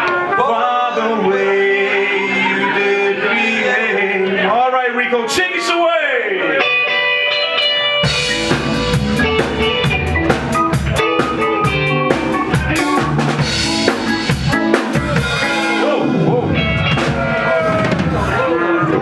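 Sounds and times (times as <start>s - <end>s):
ska band playing: 0.0s - 0.7s, 6.6s - 18.6s.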